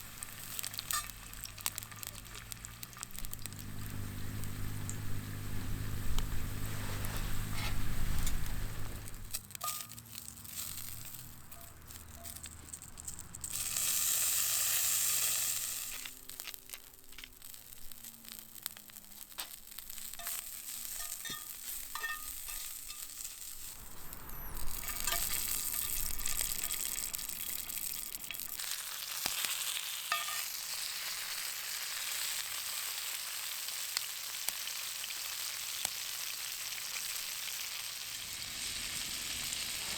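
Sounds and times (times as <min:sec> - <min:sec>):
low hum: 0:00.0 - 0:09.4, 0:23.4 - 0:28.6
small pops and crackles: 0:00.0 - 0:30.5
steak sizzling on iron plate: 0:00.0 - 0:39.9.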